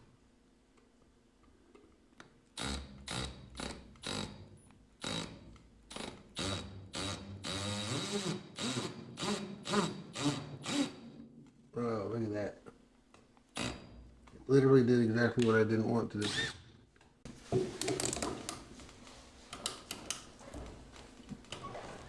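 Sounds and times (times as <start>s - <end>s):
power drill driving screws: 5.0s - 11.1s, 16.2s - 16.6s.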